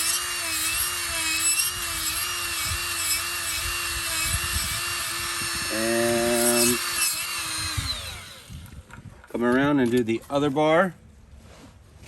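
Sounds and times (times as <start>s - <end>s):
die grinder whining: 0.0s - 8.8s.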